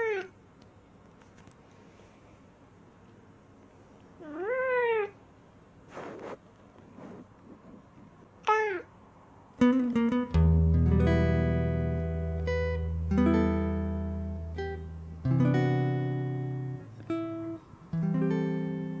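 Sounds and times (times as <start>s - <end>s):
plucked acoustic guitar: 9.6s - 19.0s.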